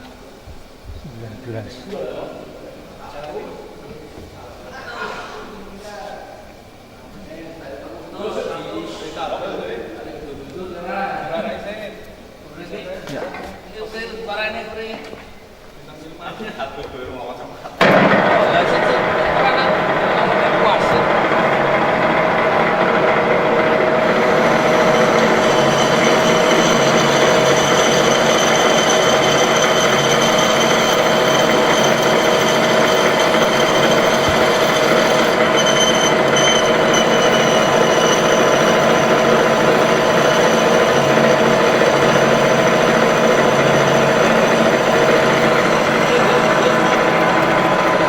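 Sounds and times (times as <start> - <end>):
high-pitched cutting whine: 17.8 - 48.0
metal lathe running: 17.8 - 48.0.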